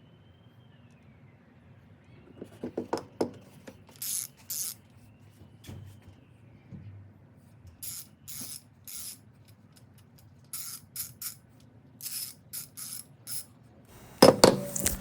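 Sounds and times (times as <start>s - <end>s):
ratchet clicking: 4.0s - 4.8s, 7.8s - 9.2s, 10.5s - 11.4s, 12.0s - 15.0s.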